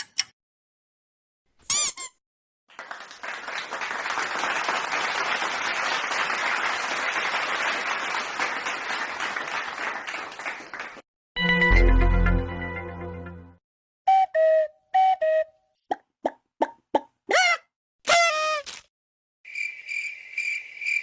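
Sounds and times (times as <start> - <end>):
crowd clapping: 2.7 - 11.0.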